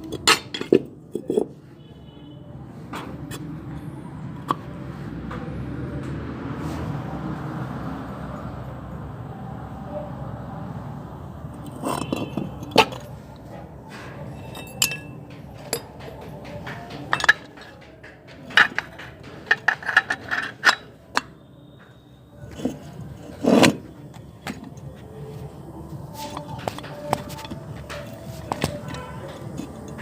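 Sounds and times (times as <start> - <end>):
metal tools clinking and scraping: 0.0 - 1.6, 11.5 - 30.0.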